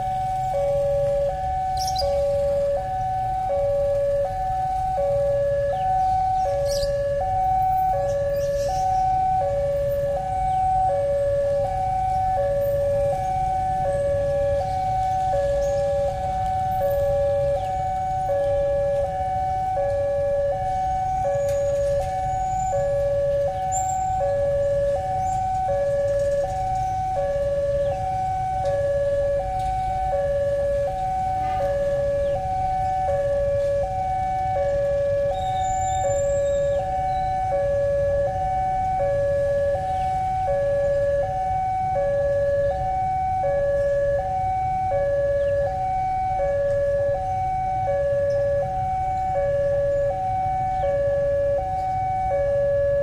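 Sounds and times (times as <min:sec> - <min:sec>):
two-tone level crossing siren: 0:00.0 - 0:53.0.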